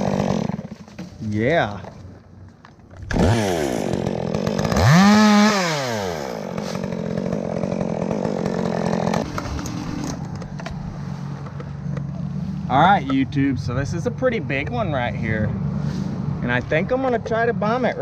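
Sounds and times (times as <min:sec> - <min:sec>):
chainsaw revving: 0:00.0 - 0:01.0, 0:03.0 - 0:11.4.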